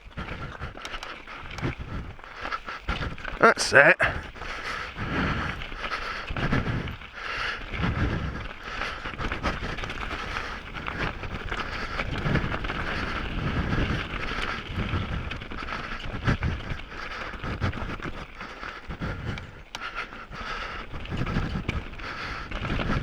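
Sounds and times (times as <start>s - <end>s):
bike clicks and rattles: 0.0s - 3.4s, 4.1s - 23.0s
bike tyre and wind noise: 0.0s - 3.4s, 4.0s - 23.0s
heavy breathing: 0.0s - 23.0s.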